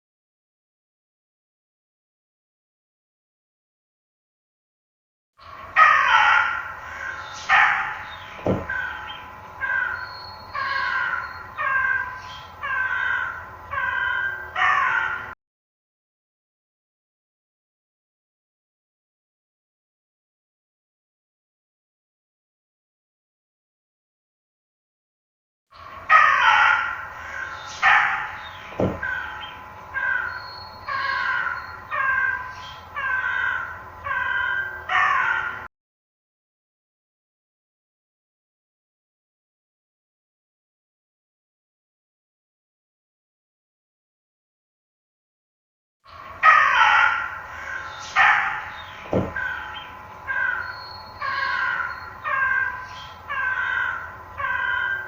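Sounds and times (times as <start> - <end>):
harsh animal cries: 5.4 - 15.4, 25.8 - 35.7, 46.1 - 55.0
crow cawing: 5.5 - 15.4, 25.8 - 35.7, 46.1 - 55.0
low falling thud: 8.4 - 8.7, 28.7 - 29.1, 49.0 - 49.4.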